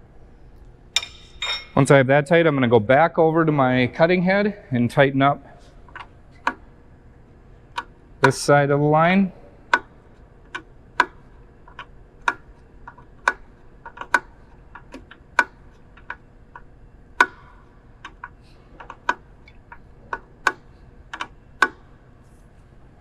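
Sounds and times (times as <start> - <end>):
wrenches clinking on metal fitting: 1.0 - 1.9.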